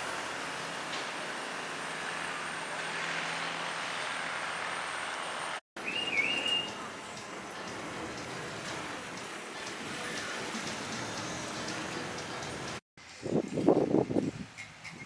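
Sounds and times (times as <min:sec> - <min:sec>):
city traffic noise: 0:00.0 - 0:13.4
high whistled chirp: 0:05.8 - 0:06.8.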